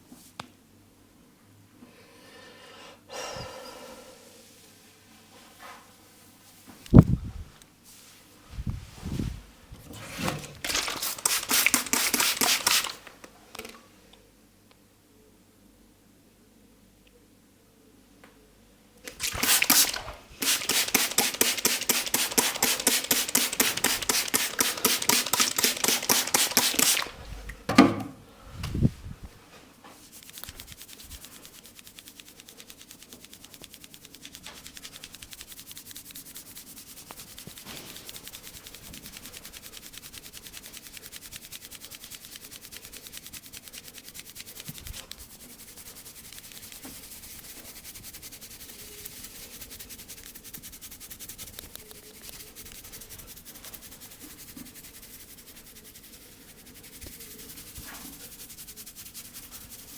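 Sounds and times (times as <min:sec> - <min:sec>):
hands scratching through hair: 0:10.6 - 0:13.8, 0:19.1 - 0:27.3, 0:28.7 - 0:59.9.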